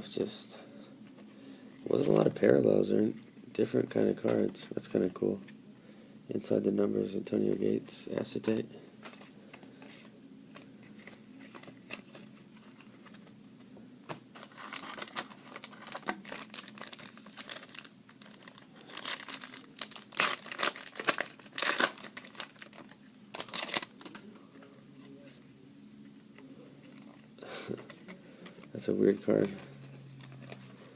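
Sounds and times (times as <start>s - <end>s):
card pack wrapper crinkling: 14.4s - 24.3s.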